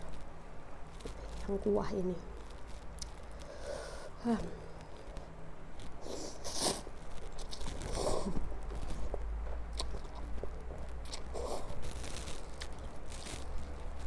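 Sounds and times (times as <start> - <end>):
person chewing noodles: 2.8 - 14.0
noisy slurping: 6.0 - 13.7.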